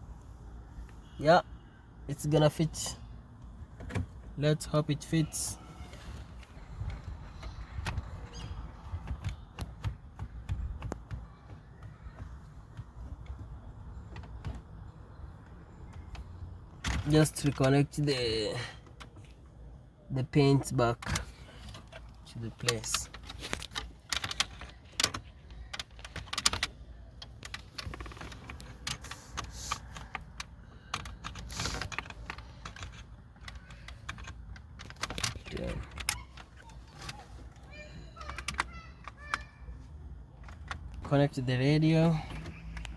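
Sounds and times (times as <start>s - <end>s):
plastic and metal clicks and knocks: 6.2s - 18.1s, 20.6s - 39.6s, 40.4s - 41.1s.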